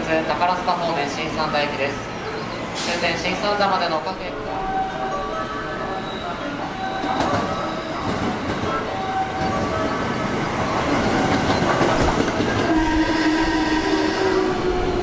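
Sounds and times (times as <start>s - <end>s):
train rumble and wheel clatter: 0.0s - 15.0s
train music horn melody: 1.0s - 15.0s
train air horn blast: 12.6s - 15.0s.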